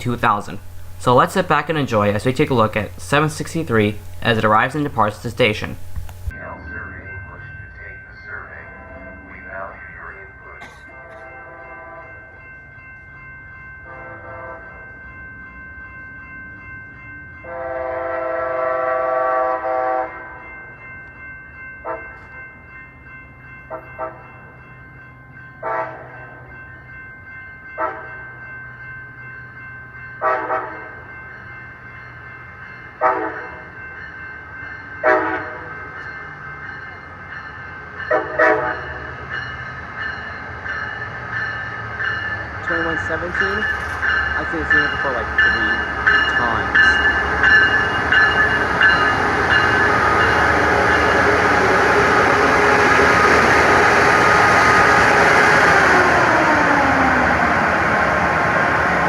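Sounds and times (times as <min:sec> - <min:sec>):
steady high whine: 0:00.0 - 0:08.6
train horn blast: 0:17.4 - 0:20.3, 0:30.2 - 0:30.9, 0:33.0 - 0:33.6, 0:35.0 - 0:35.6, 0:38.1 - 0:38.9.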